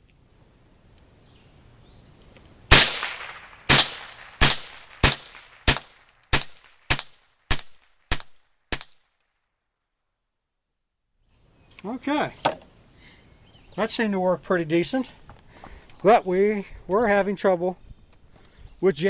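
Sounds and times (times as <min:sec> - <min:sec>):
rifle shots echoing: 0:02.7 - 0:09.0.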